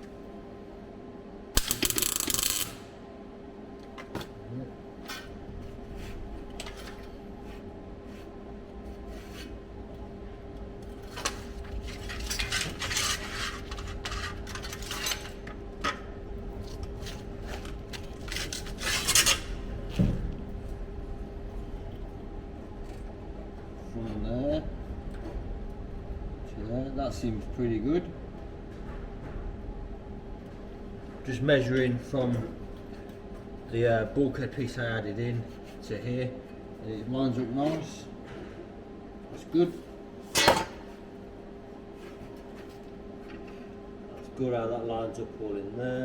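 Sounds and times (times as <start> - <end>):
steady hum: 0.0 - 46.0
metal panels and tools clattering: 11.0 - 16.1, 40.3 - 40.9.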